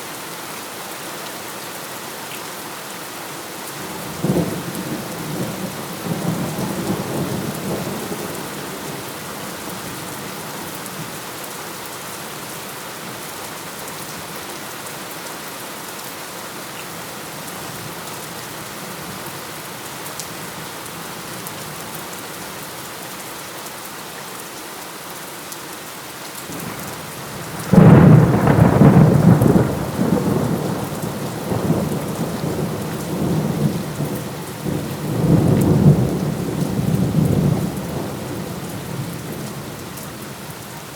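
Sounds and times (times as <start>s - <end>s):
steady rain falling: 0.0s - 40.9s
thunder rumbling: 27.2s - 39.8s
loud thunderclap: 27.4s - 38.4s.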